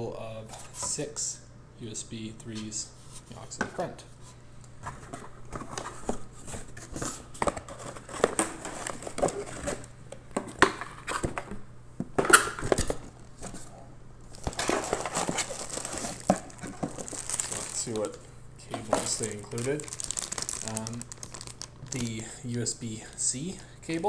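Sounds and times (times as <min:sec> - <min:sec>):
packaging crinkling and rustling: 0:04.7 - 0:11.6, 0:12.2 - 0:22.6.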